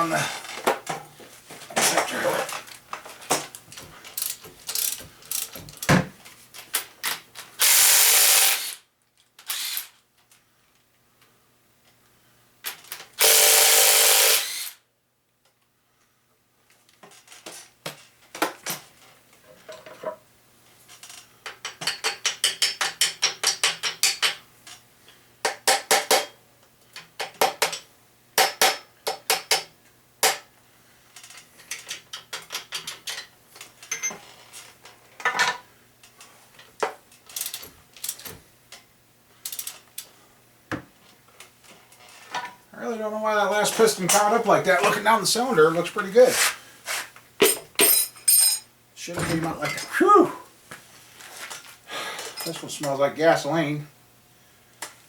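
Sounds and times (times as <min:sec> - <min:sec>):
ratchet wrench clicking: 0:04.2 - 0:05.6, 0:07.6 - 0:08.8, 0:13.2 - 0:14.8
metallic tool clinks: 0:47.4 - 0:48.7.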